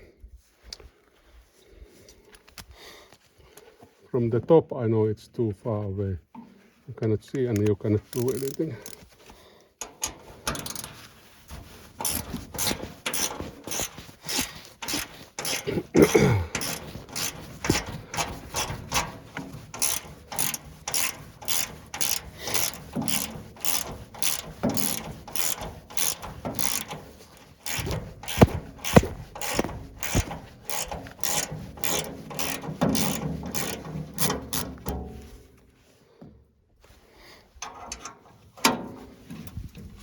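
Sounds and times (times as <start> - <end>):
ratchet wrench clicking: 8.1 - 9.1, 9.8 - 11.0, 12.0 - 15.9, 16.5 - 34.9
sharp metal knocks: 11.6 - 35.3.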